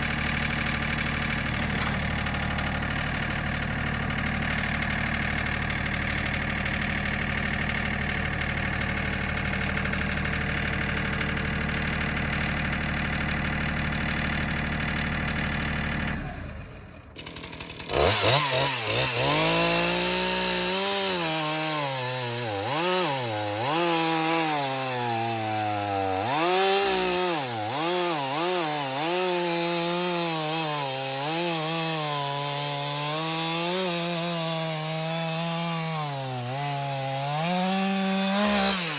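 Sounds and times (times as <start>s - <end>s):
engine running steadily: 0.0s - 17.2s
chainsaw cutting a log: 0.0s - 38.9s.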